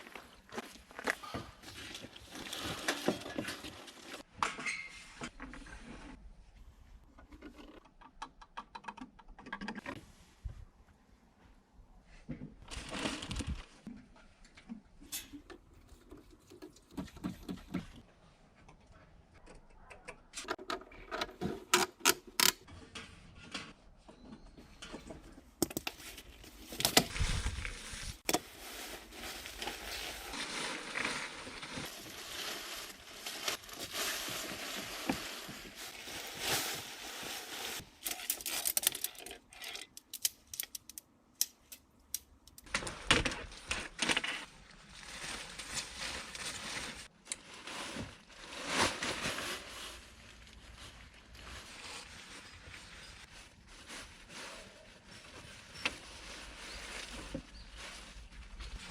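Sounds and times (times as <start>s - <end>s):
rustling: 24.1s - 40.0s, 42.6s - 58.9s.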